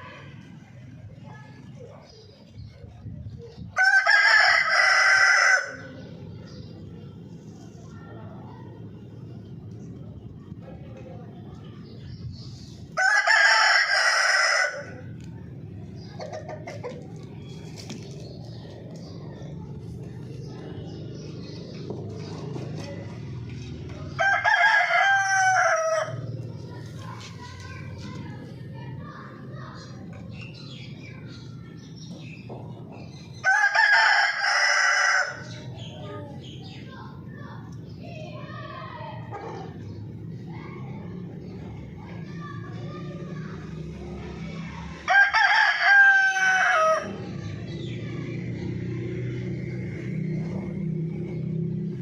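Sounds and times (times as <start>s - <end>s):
rooster crowing: 3.8s - 5.8s, 13.0s - 15.0s, 24.2s - 26.2s, 33.4s - 35.5s, 45.1s - 47.1s.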